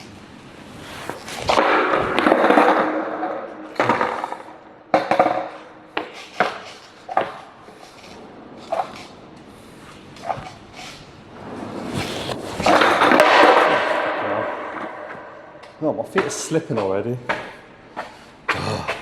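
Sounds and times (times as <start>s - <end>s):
skateboard wheels rolling on wet pavement: 0.0s - 16.5s
skateboard clattering on ground: 1.0s - 9.4s, 10.1s - 18.1s.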